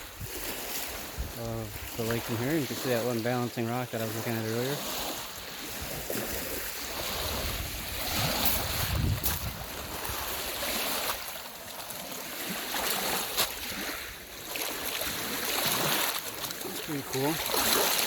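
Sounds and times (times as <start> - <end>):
wind on microphone: 0.0 - 2.8, 5.5 - 11.3
waves washing onto shore: 0.0 - 18.0.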